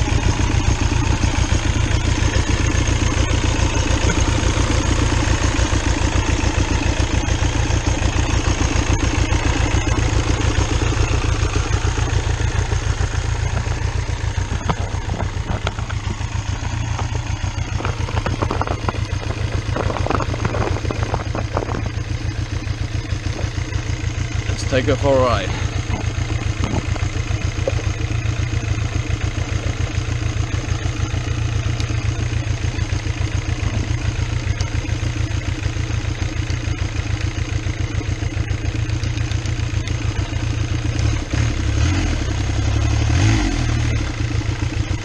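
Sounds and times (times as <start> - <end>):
diesel engine idling: 0.0 - 45.0.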